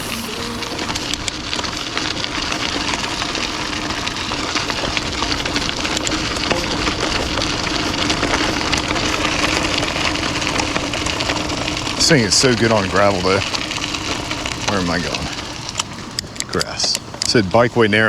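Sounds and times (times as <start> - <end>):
bike tyres crunching on gravel: 9.0 - 17.7.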